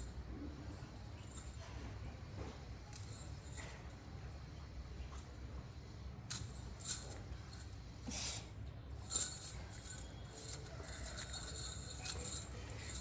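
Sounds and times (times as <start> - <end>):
bangles clinking and jingling: 0.0 - 1.8, 2.9 - 4.0, 6.2 - 13.0.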